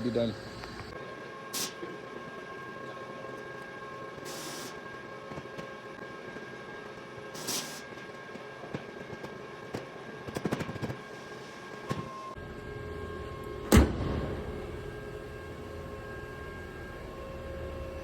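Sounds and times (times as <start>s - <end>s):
steady hum: 0.0s - 3.2s, 9.9s - 18.0s.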